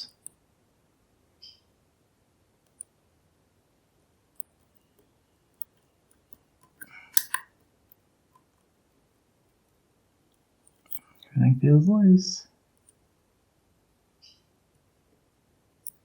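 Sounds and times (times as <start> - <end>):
lock pick clicking in lock: 5.6 - 7.5.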